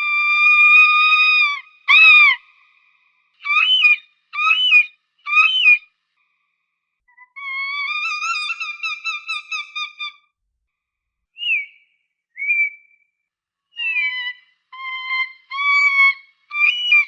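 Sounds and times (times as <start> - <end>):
falcon calling: 0.0 - 2.6, 3.4 - 5.8, 7.3 - 10.2, 13.8 - 17.0.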